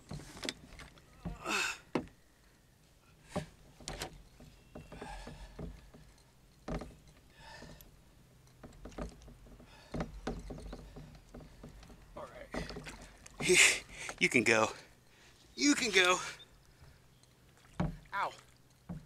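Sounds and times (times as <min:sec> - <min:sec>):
knocks and scuffs on kayak hull: 0:08.6 - 0:13.6, 0:17.7 - 0:18.1
water splashes: 0:12.4 - 0:14.8, 0:17.5 - 0:18.7.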